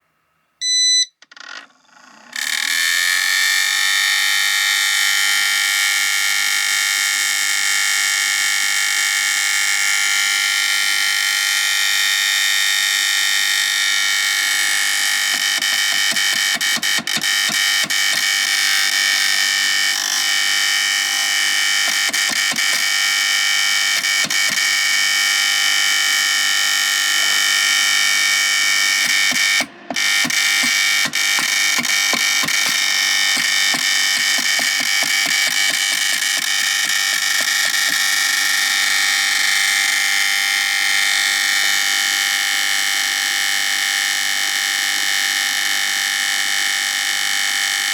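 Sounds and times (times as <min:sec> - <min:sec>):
short beep: 0:00.6 - 0:01.2.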